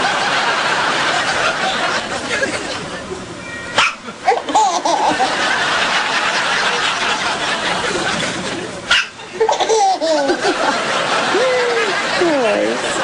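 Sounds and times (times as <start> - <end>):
people laughing: 0.0 - 3.3, 4.0 - 13.0
baby hiccup: 3.8 - 4.0.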